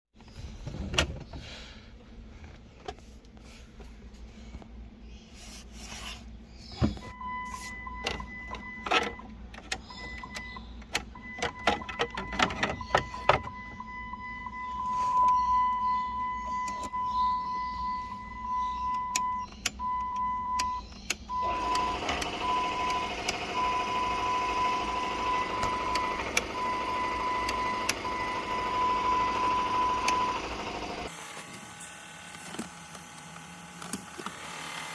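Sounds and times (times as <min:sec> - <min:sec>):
electronic beeps: 0:09.8 - 0:30.5.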